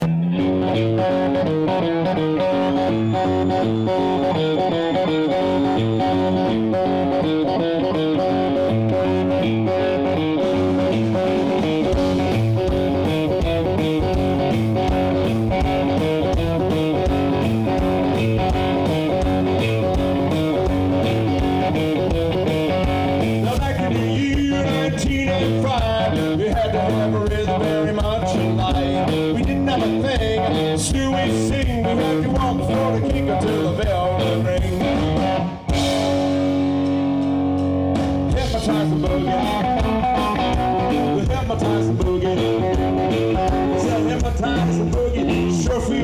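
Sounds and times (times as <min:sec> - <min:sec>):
electric guitar boogie riff: 0:00.0 - 0:46.0
steady low beat: 0:10.4 - 0:46.0.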